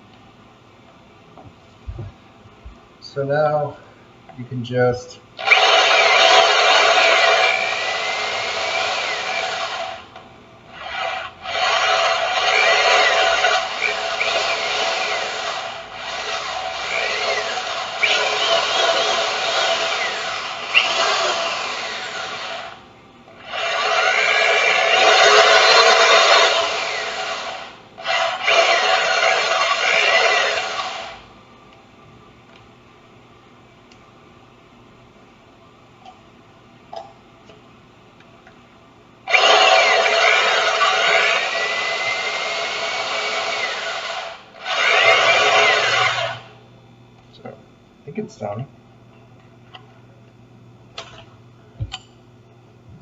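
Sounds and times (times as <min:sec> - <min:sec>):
power drill whining: 0:05.4 - 0:31.3, 0:39.3 - 0:46.6
coffee grinder grinding beans: 0:10.8 - 0:22.8, 0:23.4 - 0:31.2, 0:39.3 - 0:46.5.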